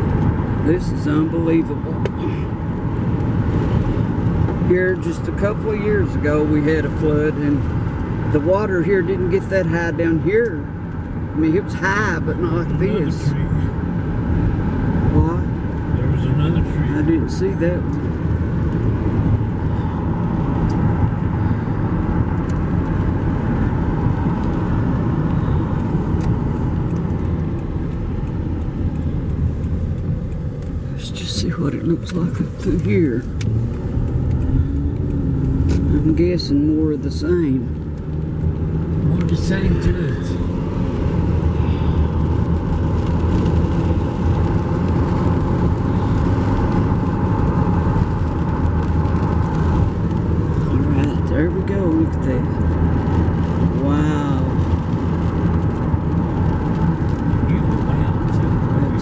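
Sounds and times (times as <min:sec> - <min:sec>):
car engine and tyre rumble: 0:00.0 - 0:59.0
road noise: 0:00.0 - 0:59.0
faint ticks: 0:32.7 - 0:35.9.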